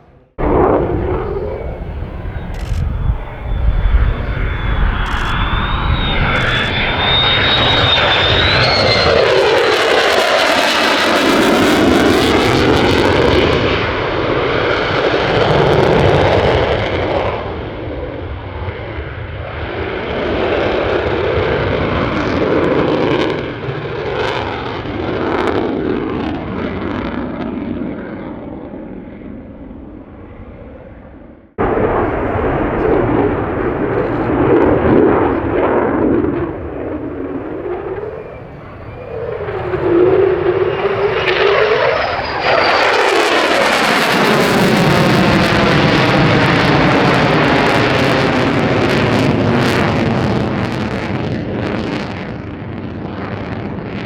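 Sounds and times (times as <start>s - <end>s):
jet passing overhead: 0.0s - 31.0s, 31.6s - 54.0s
jet engine whine: 0.0s - 54.0s.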